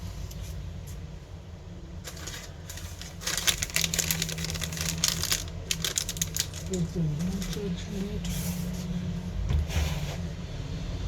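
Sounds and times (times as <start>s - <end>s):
low steady hum: 0.0s - 11.0s
clicks and rustles of small parts: 2.0s - 7.6s.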